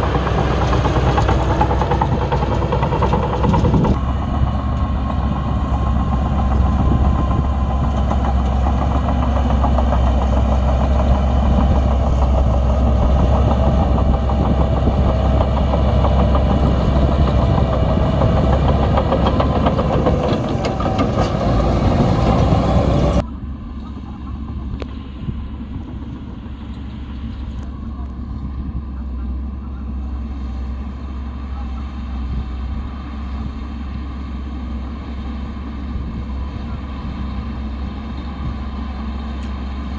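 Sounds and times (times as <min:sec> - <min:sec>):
bulldozer diesel engine droning: 0:00.0 - 0:39.9.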